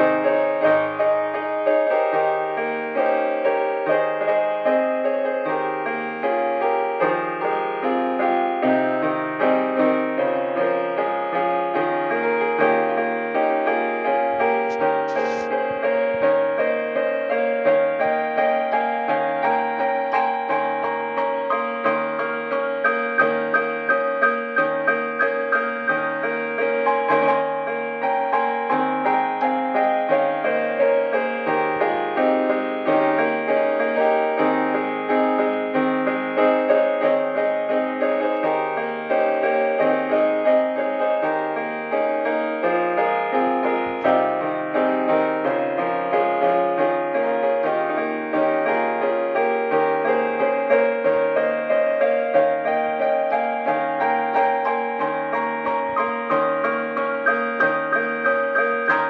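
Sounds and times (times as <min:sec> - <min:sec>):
piano music: 0:00.0 - 0:59.0.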